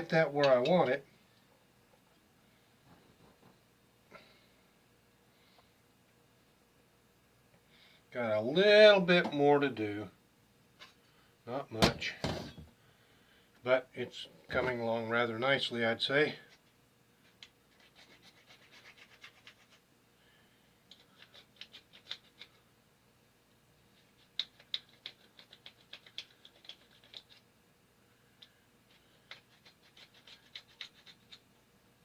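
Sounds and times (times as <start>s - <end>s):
file rasping on plastic: 17.7s - 19.8s, 28.9s - 31.5s.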